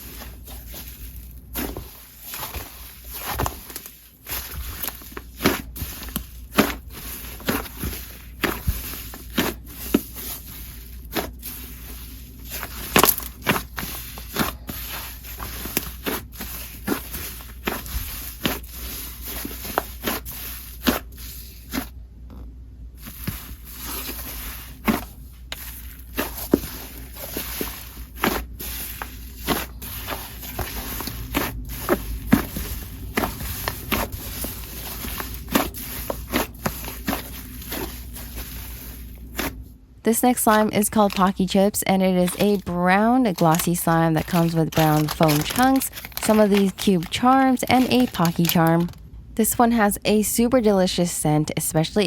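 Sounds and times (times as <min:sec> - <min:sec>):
soft crackle: 0:00.0 - 0:21.9, 0:44.2 - 0:49.0.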